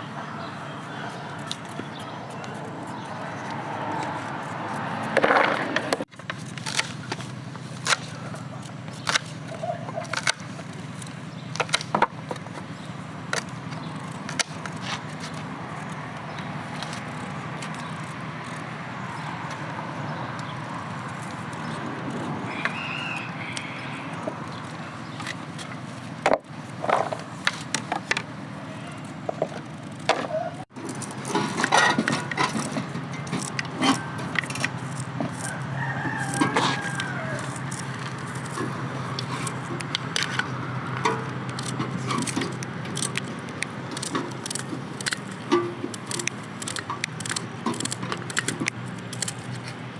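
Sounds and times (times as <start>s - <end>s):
rooster crowing: 0.0s - 4.0s, 22.4s - 24.4s, 35.3s - 37.8s
cooking clicks and knocks: 30.8s - 35.5s.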